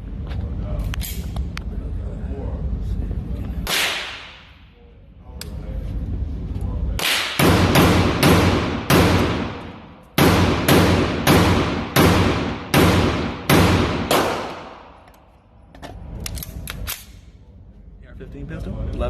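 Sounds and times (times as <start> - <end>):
rifle shots echoing: 7.0 - 15.1.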